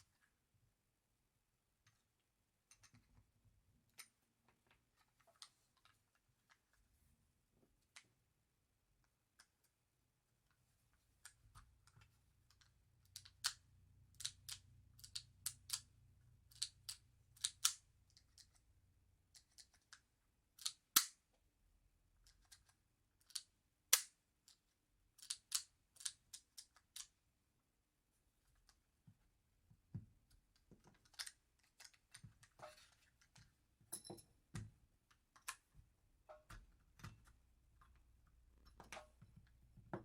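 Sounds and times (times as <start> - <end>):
pistol parts clicking: 20.6 - 21.2.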